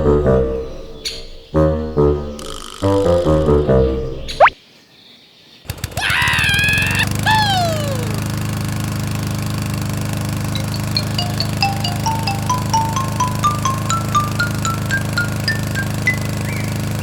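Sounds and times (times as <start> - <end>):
lawn mower engine running: 5.7 - 17.0
rising chiming notes: 11.0 - 16.7.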